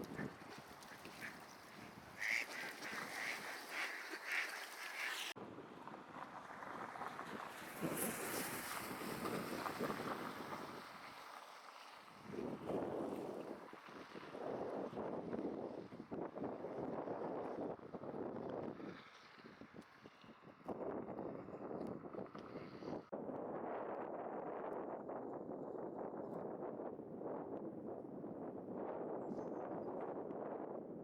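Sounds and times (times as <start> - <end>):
mallard quacks: 0.0 - 5.3
river water flowing: 0.0 - 5.4
wind buffeting microphone: 0.0 - 11.4, 12.0 - 31.0.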